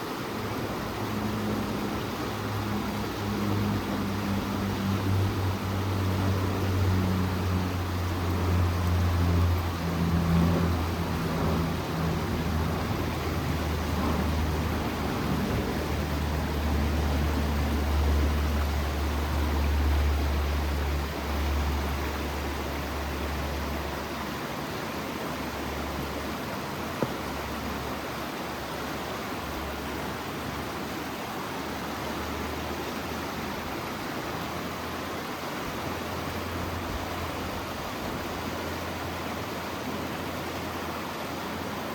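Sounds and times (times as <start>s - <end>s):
creek flowing: 0.0s - 41.9s.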